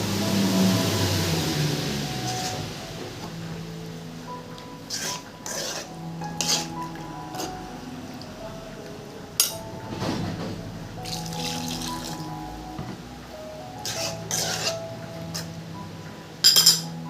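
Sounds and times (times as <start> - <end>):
background music: 0.0 - 17.0
running water pouring: 11.0 - 12.3.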